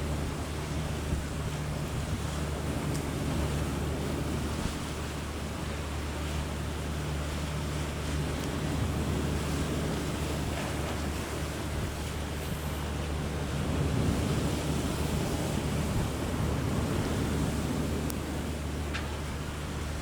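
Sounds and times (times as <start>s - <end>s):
sea waves washing: 0.0s - 20.0s
ship engine drone: 0.0s - 20.0s
wind blowing across microphone: 7.6s - 20.0s.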